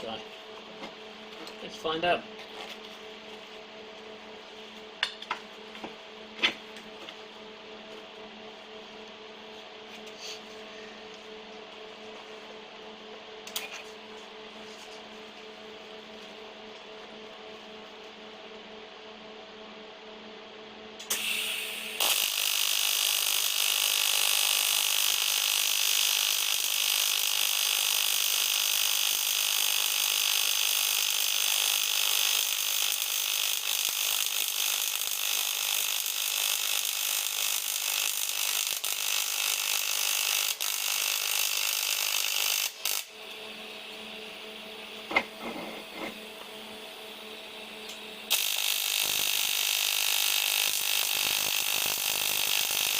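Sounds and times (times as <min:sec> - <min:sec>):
steady hum: 0:00.0 - 0:22.0, 0:43.1 - 0:48.4
welding arc hissing: 0:21.0 - 0:43.2, 0:48.3 - 0:52.9.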